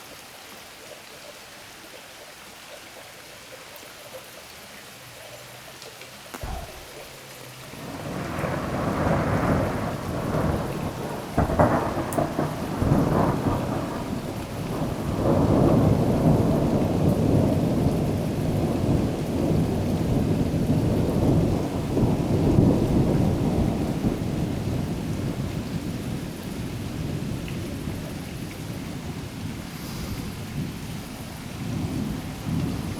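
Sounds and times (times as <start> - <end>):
steady rain: 0.0 - 32.9
sharp thunder crack: 6.4 - 7.1, 7.8 - 17.5
thunder rumbling: 6.4 - 26.2, 28.7 - 32.9.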